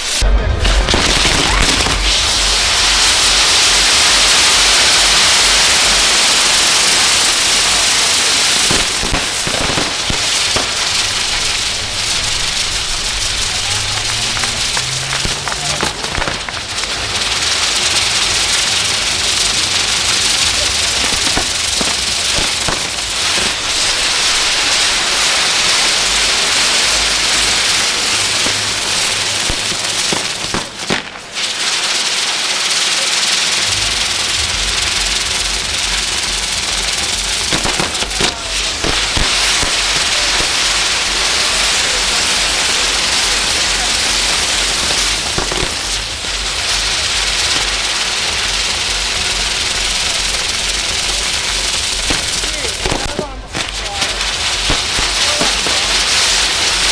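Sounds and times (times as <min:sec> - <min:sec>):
low rumble: 0:00.0 - 0:06.0
firework pops: 0:00.0 - 0:56.9
ground fireworks hissing: 0:00.0 - 0:56.9.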